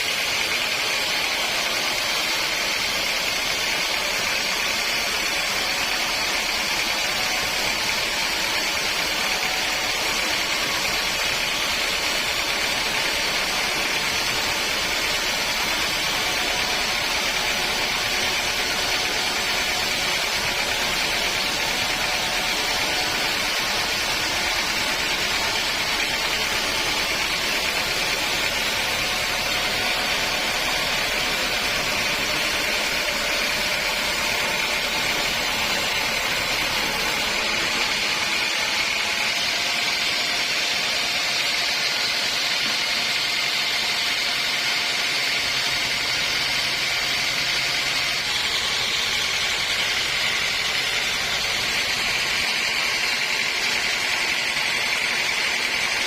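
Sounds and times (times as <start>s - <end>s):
sawmill machinery humming: 0.0s - 56.0s.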